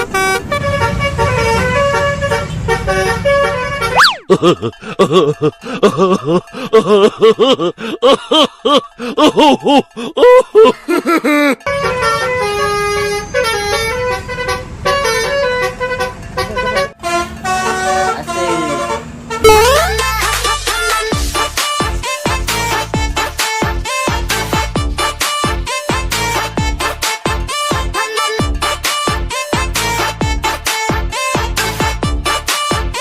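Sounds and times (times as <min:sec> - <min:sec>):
multi-tone bus horn tune: 0:00.0 - 0:04.2, 0:11.6 - 0:33.0.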